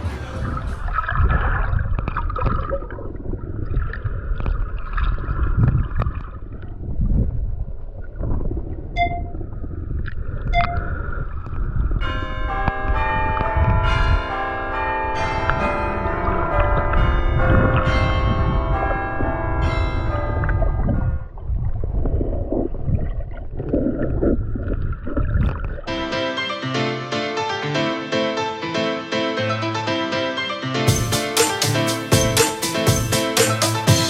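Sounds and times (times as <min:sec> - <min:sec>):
short high beeps: 0:09.0 - 0:09.4, 0:10.5 - 0:10.9
bell-like chime tones: 0:12.0 - 0:21.2.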